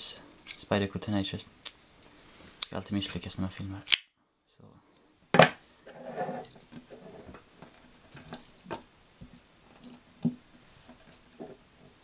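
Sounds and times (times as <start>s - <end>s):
pocket knives clicking and knocking: 3.9s - 4.1s.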